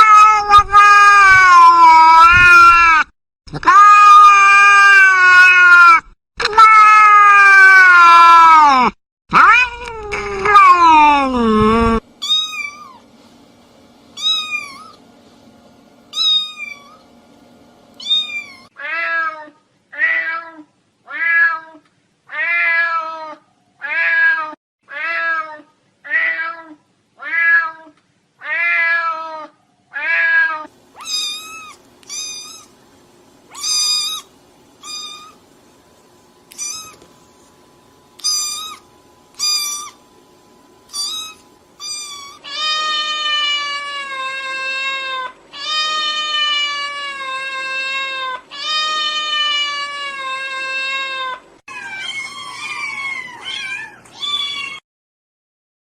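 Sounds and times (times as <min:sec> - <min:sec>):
high-pitched cat meows: 0:00.0 - 0:13.0, 0:18.0 - 0:32.7, 0:33.5 - 0:35.4, 0:36.5 - 0:37.1, 0:38.2 - 0:40.0, 0:40.9 - 0:54.8
lower-voiced cat meowing: 0:20.0 - 0:32.7.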